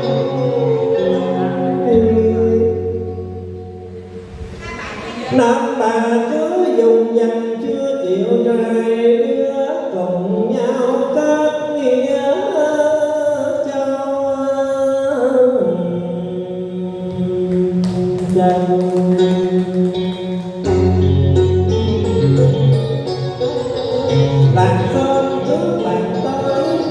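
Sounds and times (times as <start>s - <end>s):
person singing long sliding notes: 0.0s - 4.2s
plucked strings: 17.1s - 26.9s.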